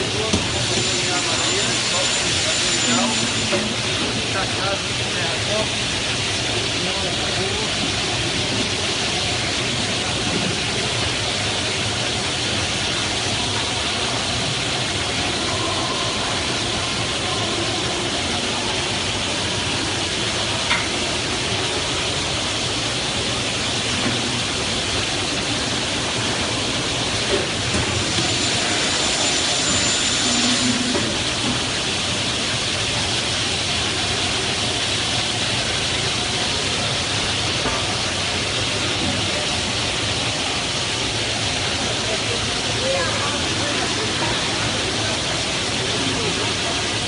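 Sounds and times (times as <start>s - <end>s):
cutting saw running: 0.0s - 5.5s, 27.3s - 32.5s.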